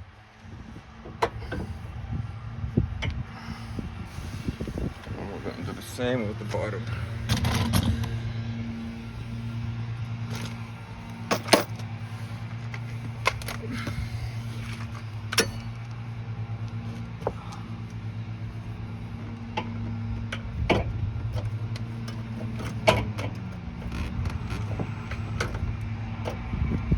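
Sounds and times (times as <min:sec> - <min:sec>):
steady low hum: 0:00.0 - 0:26.9
metal tools clinking: 0:11.3 - 0:11.8, 0:14.7 - 0:15.8.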